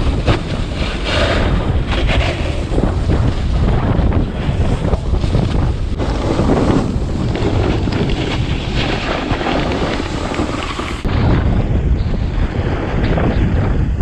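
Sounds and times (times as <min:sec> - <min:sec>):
wind buffeting microphone: 0:00.0 - 0:14.0.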